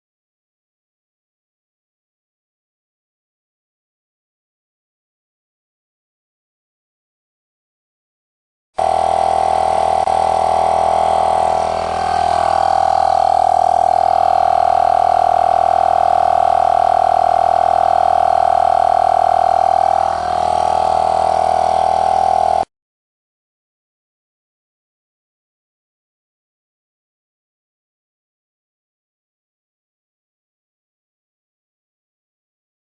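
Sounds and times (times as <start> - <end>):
air compressor buzzing with whine: 8.8 - 22.7.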